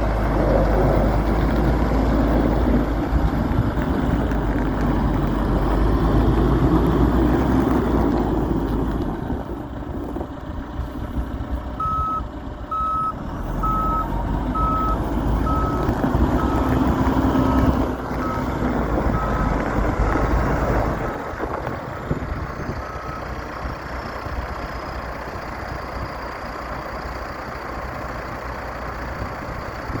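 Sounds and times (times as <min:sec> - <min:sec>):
diesel engine rumble: 0:00.0 - 0:30.0
backup alarm beeping: 0:11.8 - 0:16.7.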